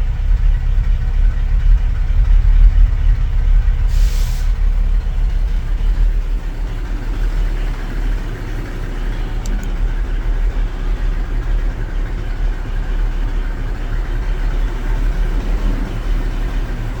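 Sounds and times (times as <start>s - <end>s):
engine idling: 0.0s - 17.0s
faint clicks: 6.8s - 10.7s.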